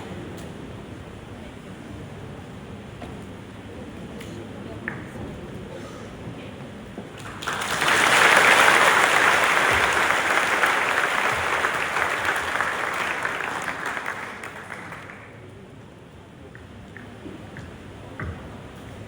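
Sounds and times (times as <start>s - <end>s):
audience clapping: 7.1s - 15.5s.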